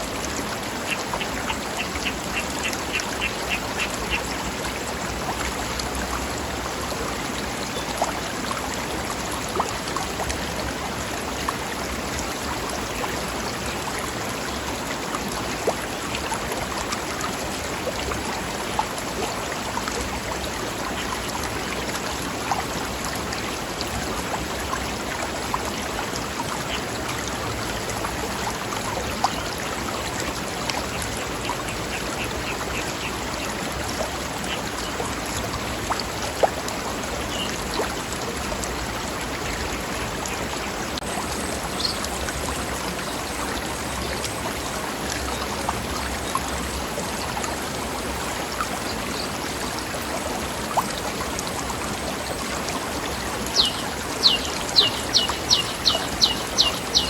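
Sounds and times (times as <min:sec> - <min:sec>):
stream flowing over rocks: 0:00.0 - 0:57.0
bird chirping: 0:53.6 - 0:57.0.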